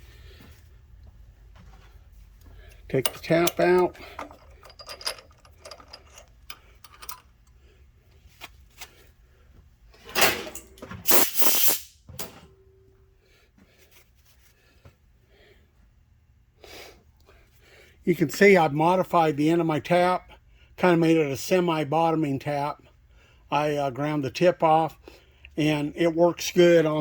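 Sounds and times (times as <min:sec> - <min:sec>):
metal tools clicking and knocking: 0:02.7 - 0:07.6
loud hiss bursts: 0:11.1 - 0:12.0.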